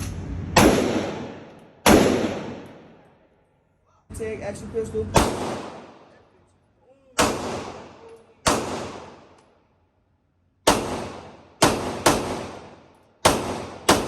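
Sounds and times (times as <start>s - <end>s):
gunshots echoing: 0.0s - 3.1s, 5.1s - 6.2s, 7.2s - 9.4s, 10.6s - 14.0s.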